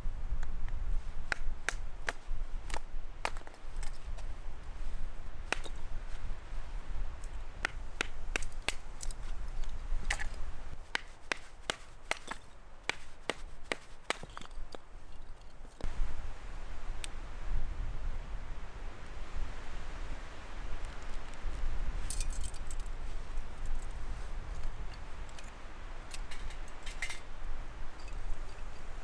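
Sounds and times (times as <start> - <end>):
firewood being chopped: 1.0 - 15.9, 24.6 - 27.3.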